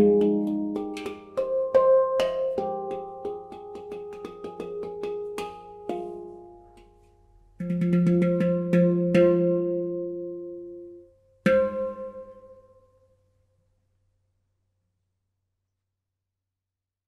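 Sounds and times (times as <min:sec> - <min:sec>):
handpan notes ringing: 0:00.0 - 0:13.0
low handpan note: 0:00.0 - 0:13.0.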